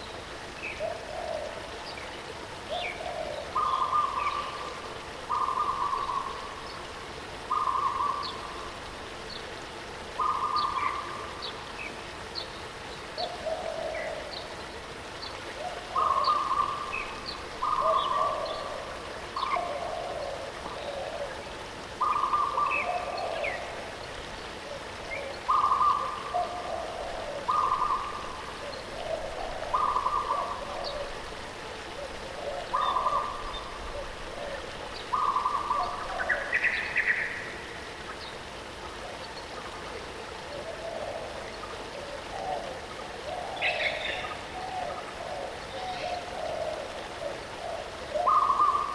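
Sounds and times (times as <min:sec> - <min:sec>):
waterfall hiss: 0:00.0 - 0:48.9
low bird calls: 0:02.7 - 0:06.8, 0:07.5 - 0:08.7, 0:10.2 - 0:11.6, 0:15.6 - 0:21.4, 0:22.0 - 0:23.8, 0:24.6 - 0:31.3, 0:31.9 - 0:38.4, 0:40.5 - 0:48.9.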